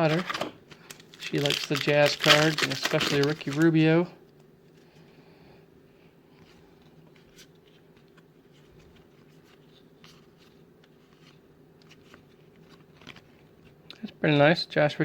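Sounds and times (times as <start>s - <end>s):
cards sliding and flipping: 0.0s - 3.8s
steady low hum: 0.0s - 15.0s.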